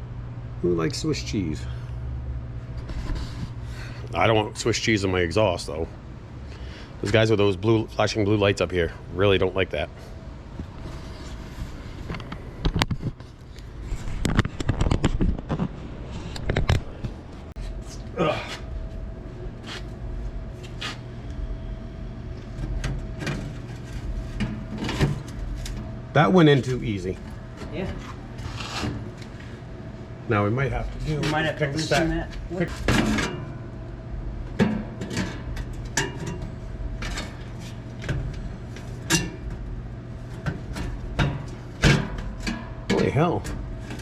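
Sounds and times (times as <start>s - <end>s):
low hum: 0.0s - 44.0s.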